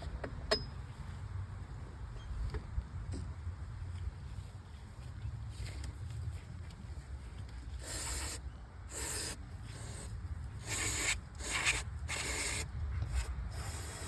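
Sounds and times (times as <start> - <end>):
hand tool rasping on metal: 7.8 - 12.6.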